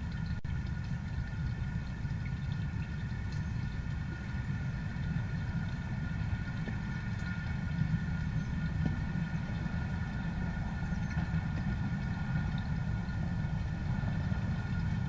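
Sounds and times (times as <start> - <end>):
faint ticks: 0.0 - 4.1
faint steady hum: 0.0 - 15.0
steady low rumble: 0.0 - 15.0.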